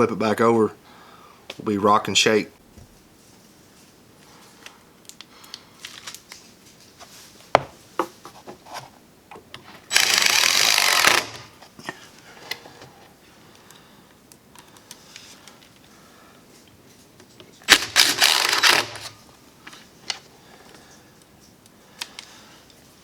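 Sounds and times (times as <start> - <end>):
power drill driving screw: 9.9 - 11.5, 17.7 - 19.2.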